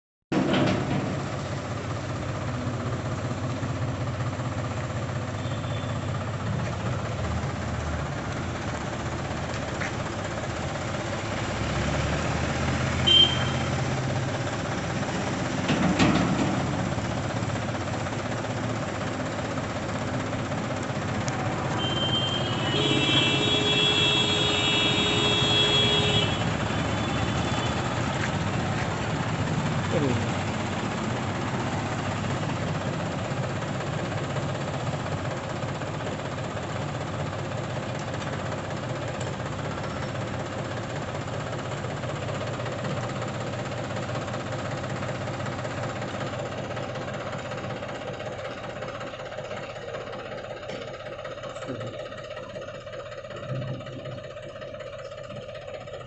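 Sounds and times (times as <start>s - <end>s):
tractor engine running: 0.3s - 56.0s
brief high tone: 5.4s - 6.2s, 21.6s - 27.9s
multi-pitch horn: 21.8s - 27.7s.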